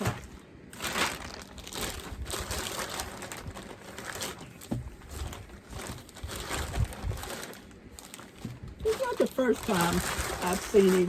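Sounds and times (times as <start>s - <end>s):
bag crinkling and rustling: 0.0s - 11.0s.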